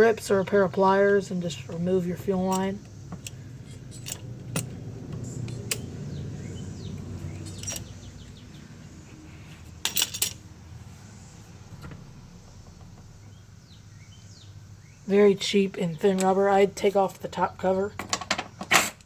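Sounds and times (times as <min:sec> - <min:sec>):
low steady rumble: 0:00.0 - 0:18.1
metal hand tools clinking: 0:02.4 - 0:04.7, 0:07.4 - 0:08.0, 0:09.8 - 0:10.4.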